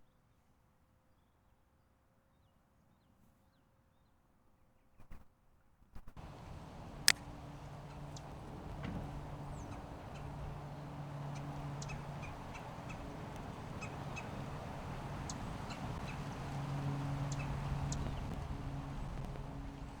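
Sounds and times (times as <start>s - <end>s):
background hiss: 6.2s - 20.0s
bird chirps: 6.2s - 20.0s
low hum: 6.2s - 20.0s.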